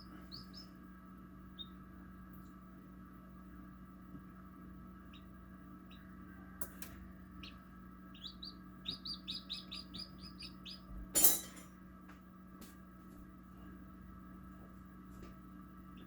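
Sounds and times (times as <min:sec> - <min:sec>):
chicks peeping: 0:00.0 - 0:00.8, 0:01.4 - 0:01.9, 0:05.0 - 0:06.6, 0:07.2 - 0:11.1
steady hum: 0:00.0 - 0:16.0.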